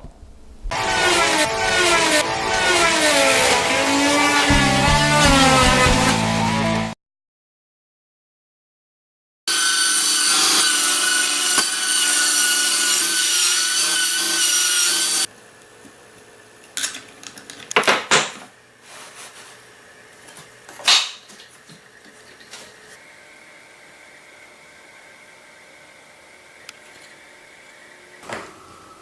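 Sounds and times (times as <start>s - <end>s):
power tool cutting wood: 0.7s - 7.0s, 9.5s - 15.3s.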